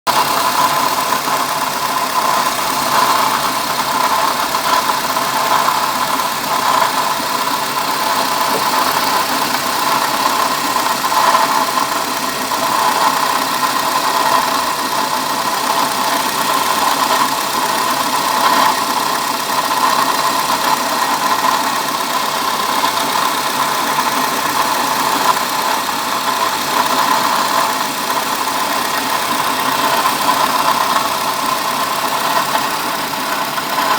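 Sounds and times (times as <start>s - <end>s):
car engine idling: 0.1s - 33.9s
failing water pump noise: 5.2s - 14.5s.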